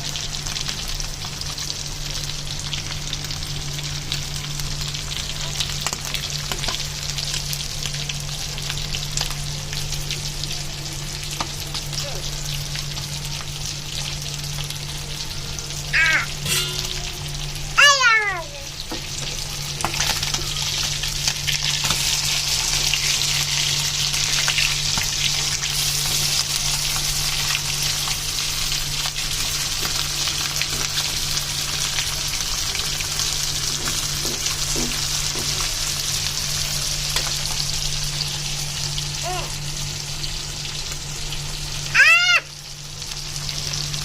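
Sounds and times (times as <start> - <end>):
fish sizzling in hot oil: 0.0 - 44.0
falling-pitched calls: 15.9 - 18.4, 41.9 - 42.5.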